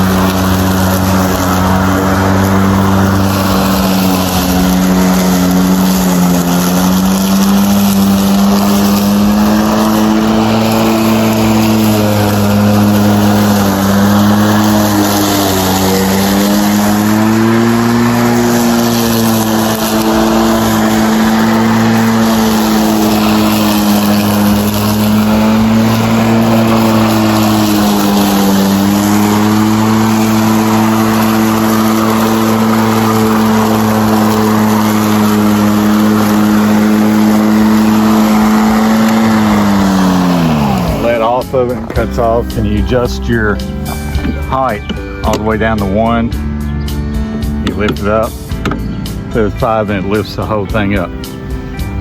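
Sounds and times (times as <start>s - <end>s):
electric lawn mower humming: 0.0s - 52.0s.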